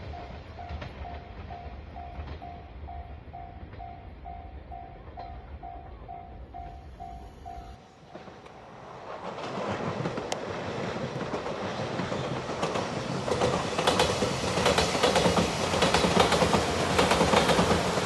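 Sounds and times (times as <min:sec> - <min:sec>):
electric train running noise: 0:00.0 - 0:18.0
wheels clacking over rail joints: 0:08.1 - 0:18.0.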